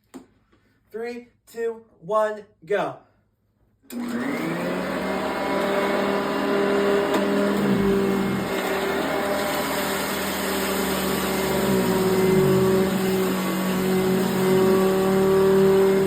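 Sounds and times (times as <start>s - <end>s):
upright vacuum cleaner running: 3.9s - 16.0s.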